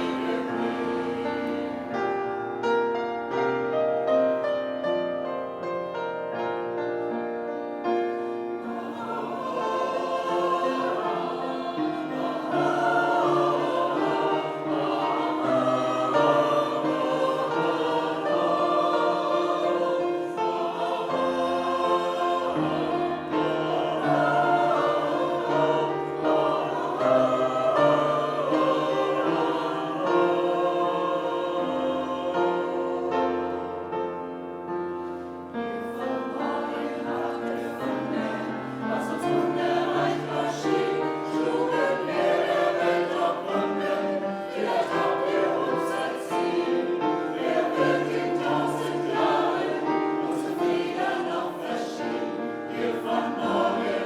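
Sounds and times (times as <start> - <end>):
choir singing: 0.0 - 54.0
piano accompaniment: 0.0 - 54.0.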